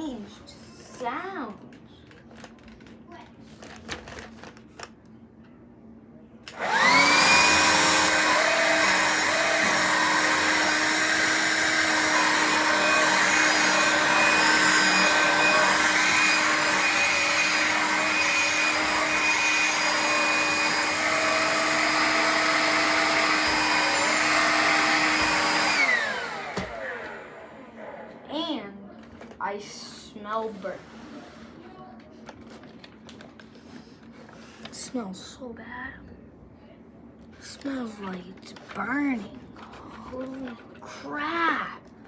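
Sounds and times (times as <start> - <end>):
vacuum motor whining: 6.5 - 28.0.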